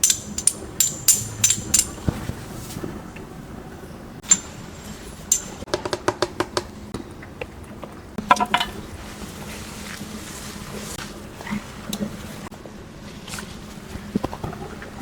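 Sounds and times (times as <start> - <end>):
ringing clinks: 0.0 - 2.1, 4.2 - 4.6, 5.3 - 5.6.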